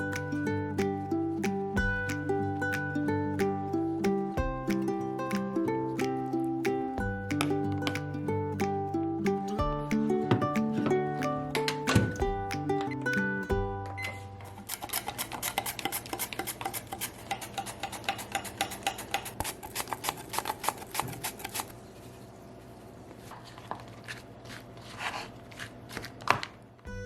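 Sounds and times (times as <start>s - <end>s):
knife chopping on cutting board: 14.7s - 21.6s.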